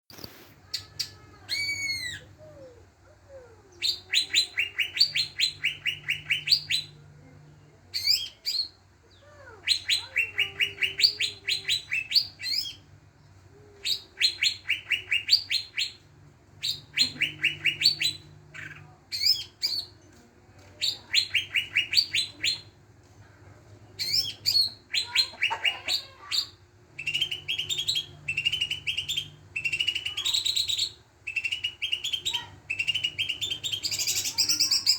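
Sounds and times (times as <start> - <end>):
leafbird singing: 3.7 - 7.0, 7.9 - 12.9, 16.6 - 20.1, 20.8 - 22.7, 24.0 - 34.9.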